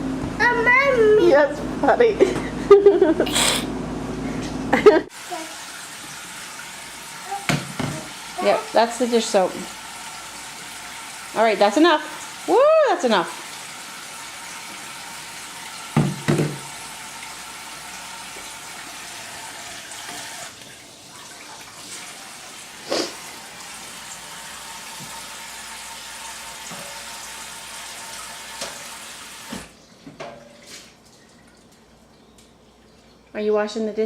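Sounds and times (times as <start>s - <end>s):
water running: 4.8s - 34.0s
knocks: 16.0s - 16.7s.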